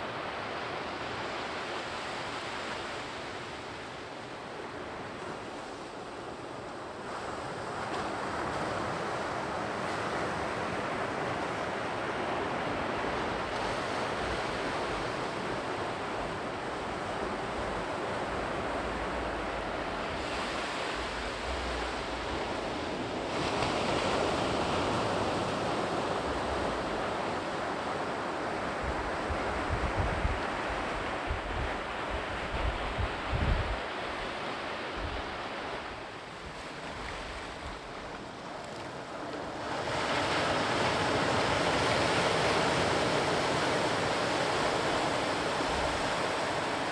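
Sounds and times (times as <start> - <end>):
sea surf breaking on shore: 0.0 - 46.9
wind buffeting microphone: 28.6 - 34.3.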